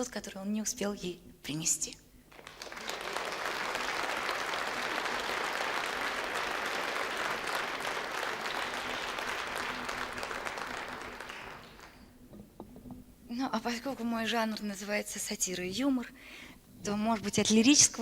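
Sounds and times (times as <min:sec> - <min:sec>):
audience applauding: 0:02.3 - 0:12.2.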